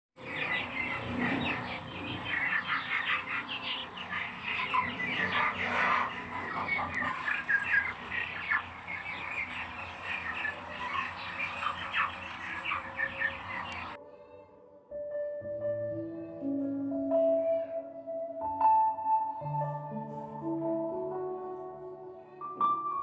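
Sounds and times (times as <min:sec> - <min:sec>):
small birds chirping: 0:00.2 - 0:14.0.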